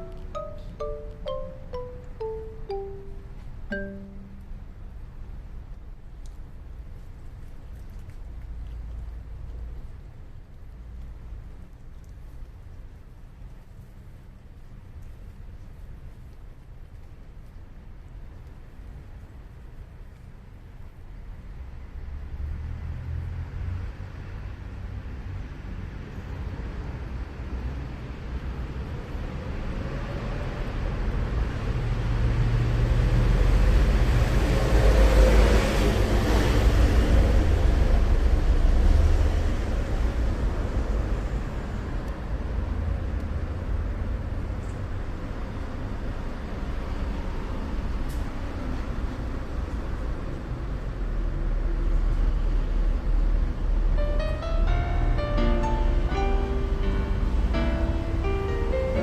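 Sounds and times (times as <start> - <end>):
passing vehicle rumble: 21.9 - 59.0.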